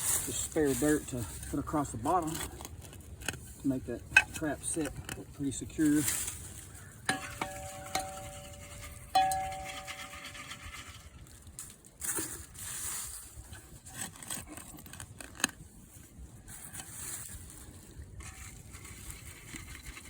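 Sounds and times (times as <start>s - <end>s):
dirt scraping and crunching: 0.0s - 20.0s
metal clink: 7.1s - 10.8s.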